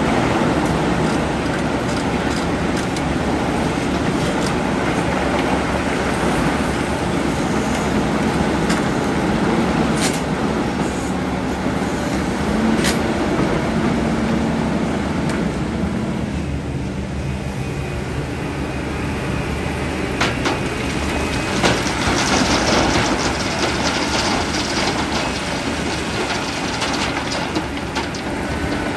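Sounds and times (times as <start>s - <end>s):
excavator diesel engine running: 0.1s - 28.9s
rattling crackling noise: 20.2s - 28.9s.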